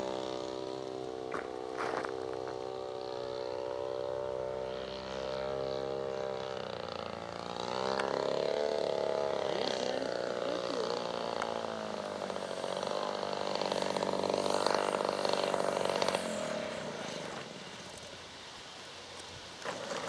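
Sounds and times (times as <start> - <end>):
model airplane engine running: 0.0 - 20.0.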